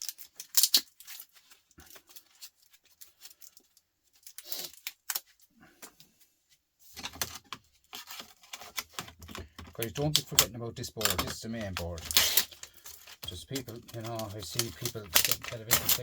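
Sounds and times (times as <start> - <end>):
small scrap parts clicking and clinking: 8.6 - 16.0.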